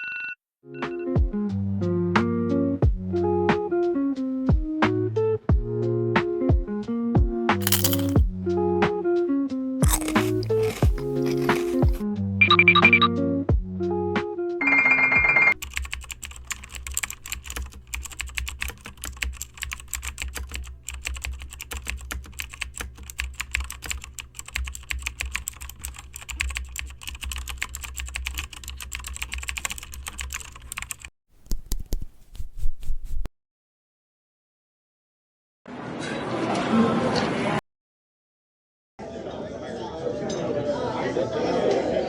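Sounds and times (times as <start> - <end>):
typing on computer keyboard: 15.6 - 31.1.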